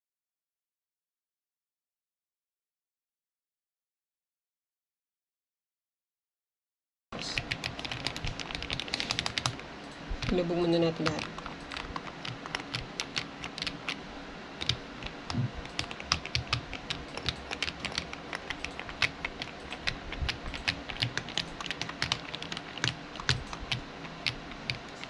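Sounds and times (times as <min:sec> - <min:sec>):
mechanical keyboard keys clacking: 0:07.2 - 0:14.0, 0:14.6 - 0:25.0.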